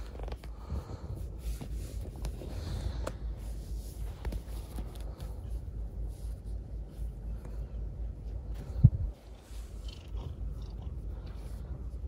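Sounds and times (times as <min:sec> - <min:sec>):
cat purring: 0:09.3 - 0:12.0.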